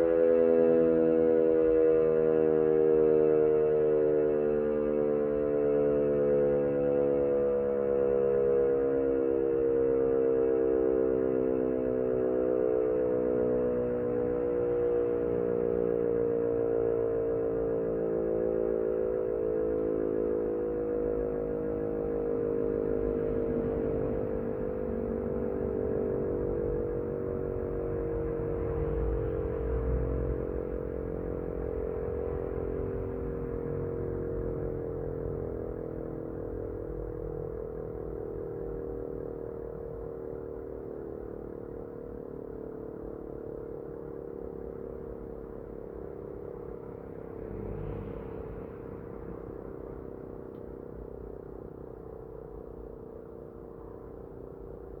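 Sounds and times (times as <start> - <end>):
electric motor siren steady tone: 0.0 - 55.0.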